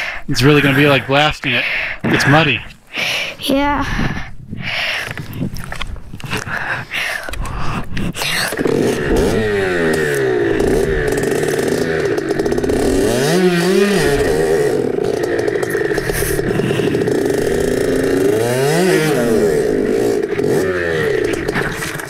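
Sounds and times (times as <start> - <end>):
dirt bike engine revving: 8.5 - 22.0.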